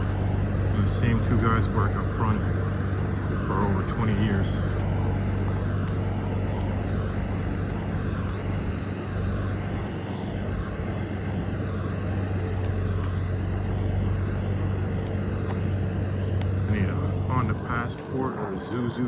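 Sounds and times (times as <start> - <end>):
large engine droning: 0.0 - 19.0.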